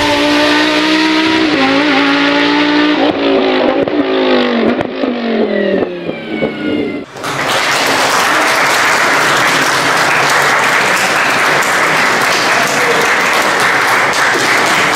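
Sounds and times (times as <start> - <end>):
crowd applause: 7.1 - 14.9.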